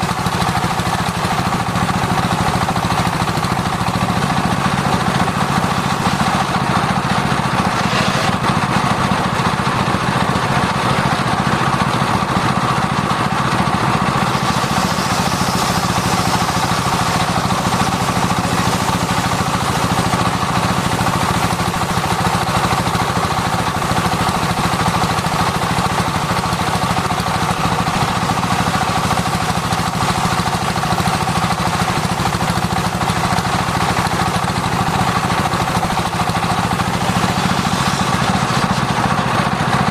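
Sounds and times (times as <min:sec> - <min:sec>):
circular saw droning: 0:01.4 - 0:12.4, 0:13.8 - 0:23.2, 0:34.6 - 0:39.9.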